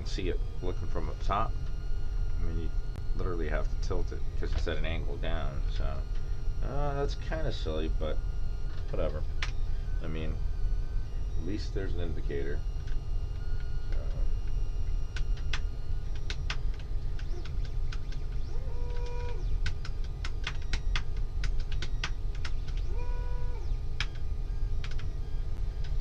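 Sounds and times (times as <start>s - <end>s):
printer running: 0.0s - 26.0s
stepper motors whining: 0.0s - 26.0s
mechanical keyboard clicking: 15.2s - 22.9s, 24.8s - 25.1s.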